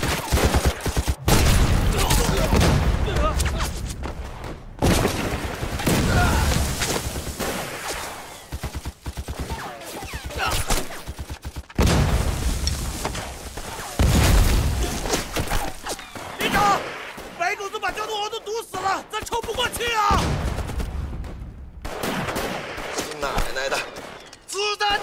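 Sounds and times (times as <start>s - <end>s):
loud explosions: 1.2s - 8.5s, 11.8s - 15.1s.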